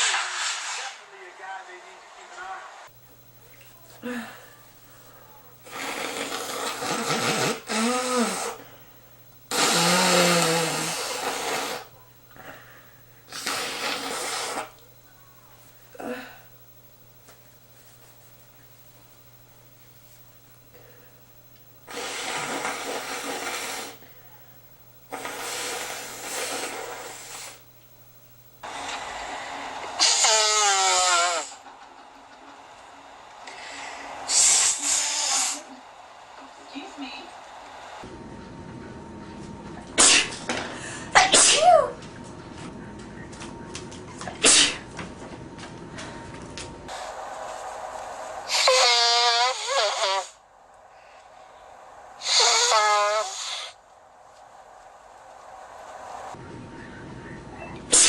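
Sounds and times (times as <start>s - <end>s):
person blowing nose: 5.7s - 8.6s, 9.5s - 11.9s, 13.3s - 14.8s, 21.9s - 24.0s, 25.1s - 27.6s, 30.0s - 31.6s, 33.5s - 35.7s, 48.5s - 50.4s, 52.2s - 53.8s.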